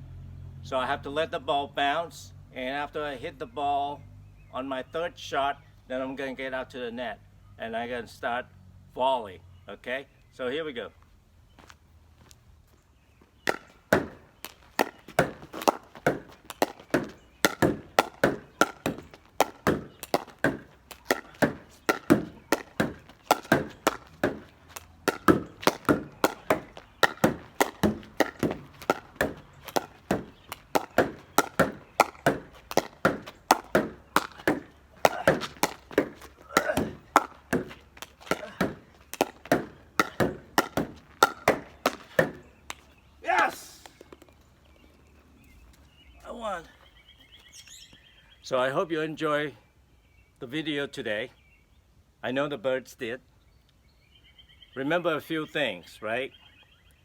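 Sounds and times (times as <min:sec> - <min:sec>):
ball bouncing on ground: 0:13.3 - 0:44.6
ball hitting garage door: 0:13.5 - 0:42.5
ball hitting paddle: 0:13.5 - 0:44.3.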